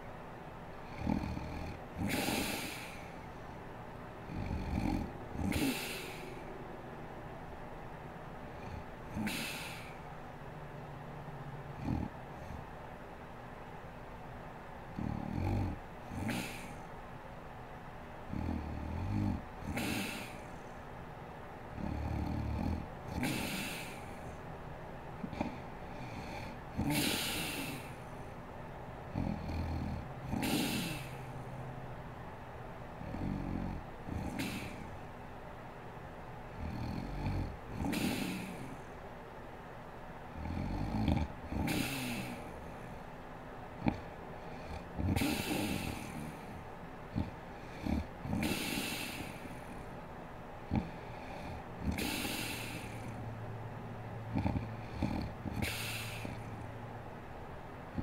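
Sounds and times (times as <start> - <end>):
woman snoring: 0.8 - 3.2, 4.2 - 6.4, 8.6 - 10.0, 11.8 - 12.6, 14.9 - 16.9, 18.3 - 20.5, 21.8 - 24.2, 25.2 - 28.0, 29.1 - 31.4, 33.0 - 35.0, 36.6 - 38.8, 40.4 - 43.0, 43.8 - 49.9, 50.7 - 53.2, 54.3 - 56.6.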